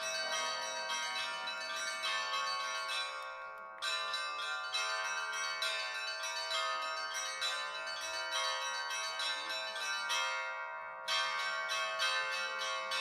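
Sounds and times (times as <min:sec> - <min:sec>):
church bells ringing: 0:00.0 - 0:13.0.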